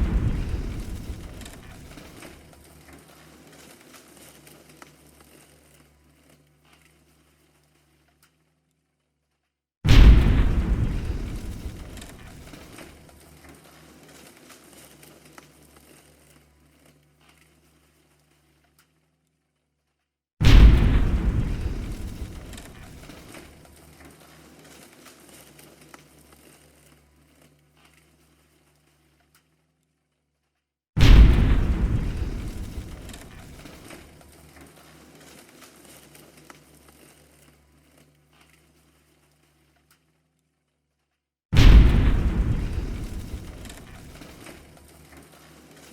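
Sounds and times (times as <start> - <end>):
low explosion rumble: 0.0 - 2.5, 9.9 - 13.0, 20.4 - 23.6, 31.0 - 34.2, 41.6 - 44.8
debris crackles and clicks: 0.0 - 8.4, 9.9 - 18.9, 20.4 - 29.5, 31.0 - 40.1, 41.6 - 45.9.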